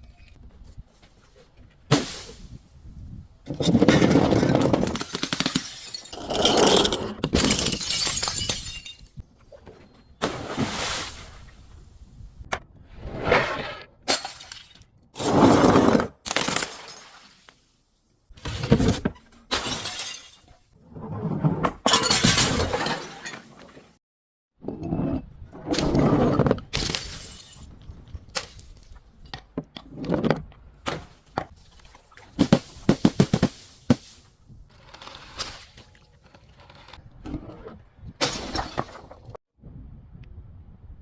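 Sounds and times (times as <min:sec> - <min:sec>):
glass bottles shattering: 0:03.6 - 0:09.2, 0:16.3 - 0:17.5, 0:19.5 - 0:20.6, 0:21.9 - 0:23.6, 0:26.8 - 0:27.8.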